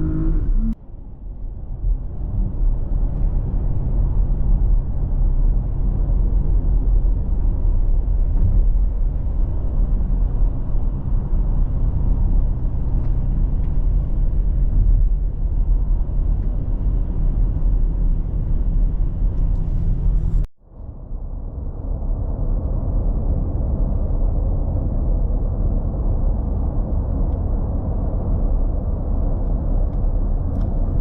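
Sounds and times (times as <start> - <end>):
car engine cruising: 0.0 - 0.8
road noise: 0.0 - 25.5, 26.3 - 31.0.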